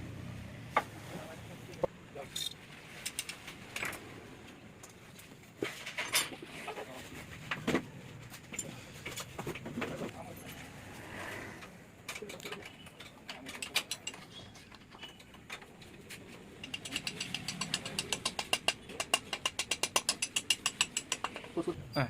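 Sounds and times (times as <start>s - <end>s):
ratchet wrench clicking: 16.6s - 21.4s.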